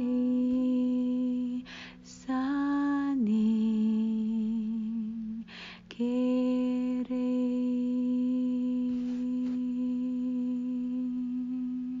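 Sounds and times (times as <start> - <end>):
woman humming held notes: 2.2 - 12.0.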